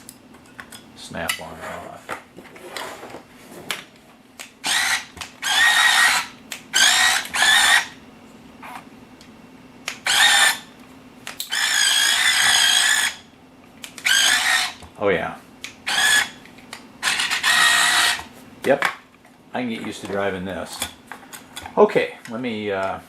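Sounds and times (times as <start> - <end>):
toy electric motors whining: 4.6 - 8.0, 9.9 - 10.7, 11.4 - 13.2, 13.9 - 14.8, 15.8 - 16.4, 17.0 - 18.3.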